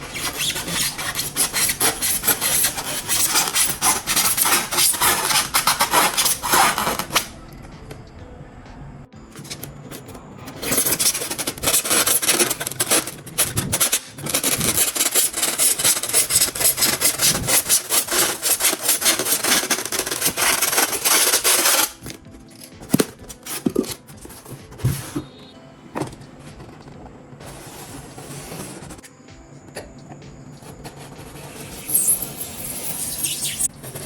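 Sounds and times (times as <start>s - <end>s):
tool rasping material: 0.0s - 7.3s, 10.6s - 22.2s.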